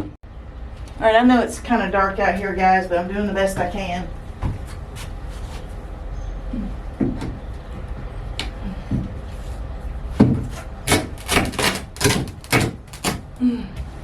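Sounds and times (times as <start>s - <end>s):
hammer knocking on wood: 10.2s - 13.2s.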